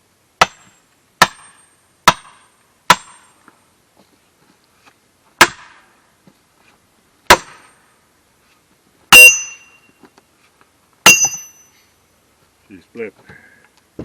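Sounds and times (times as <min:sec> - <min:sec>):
sledgehammer striking steel wedge: 0:00.4 - 0:03.3, 0:05.4 - 0:05.8, 0:07.3 - 0:07.8, 0:09.1 - 0:09.8, 0:11.0 - 0:11.7.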